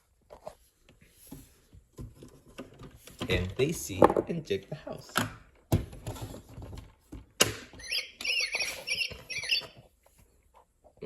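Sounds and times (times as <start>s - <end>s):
high squeaky chirps: 7.8s - 9.8s.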